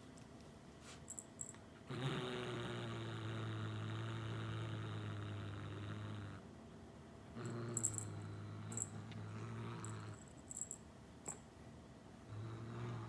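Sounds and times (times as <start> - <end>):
cat purring: 7.4 - 10.7, 12.3 - 13.0.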